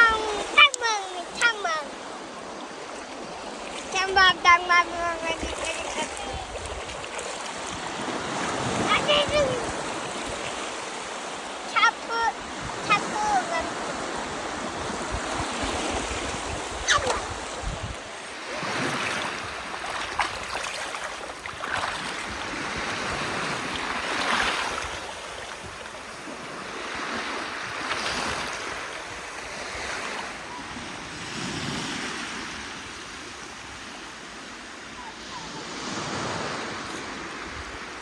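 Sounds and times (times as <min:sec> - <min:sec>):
sea waves washing onto shore: 0:00.0 - 0:38.0
wind buffeting microphone: 0:03.2 - 0:11.1, 0:12.3 - 0:33.1.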